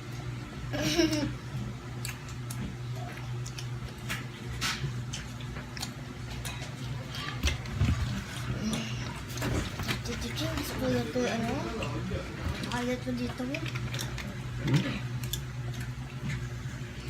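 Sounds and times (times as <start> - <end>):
steady low hum: 0.0 - 17.0
people eating mouth sounds: 1.4 - 7.0, 13.6 - 16.6.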